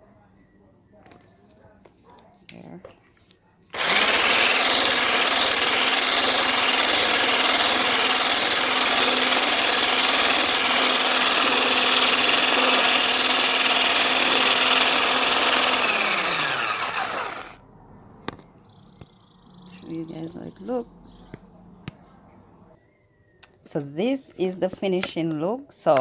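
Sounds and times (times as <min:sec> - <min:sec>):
motor winding down: 0:03.7 - 0:17.6
small appliance motor running: 0:03.7 - 0:17.6.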